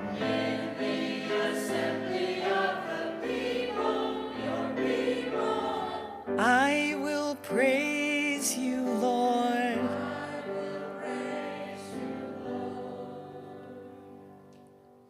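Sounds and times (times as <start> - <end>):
person singing: 6.3 - 12.6.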